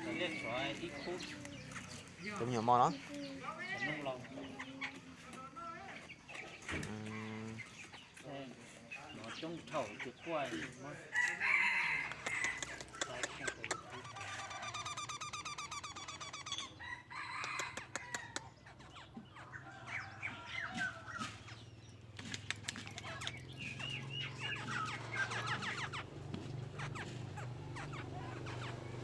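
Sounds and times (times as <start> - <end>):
birds chirping and singing: 0.0 - 29.0.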